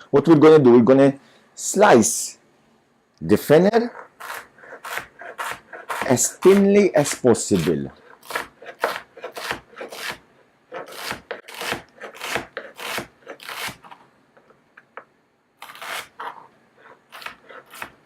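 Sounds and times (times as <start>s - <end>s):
knife slicing on chopping board: 4.2s - 13.9s, 17.1s - 18.0s.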